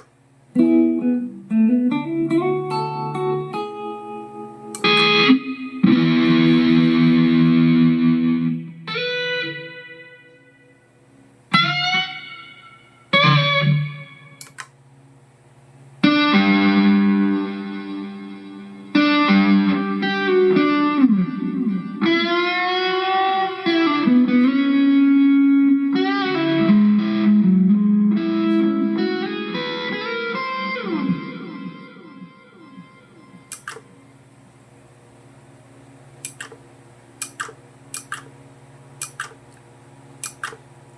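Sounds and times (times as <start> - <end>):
distorted electric guitar: 0.6 - 10.8, 11.5 - 14.6, 16.0 - 33.8.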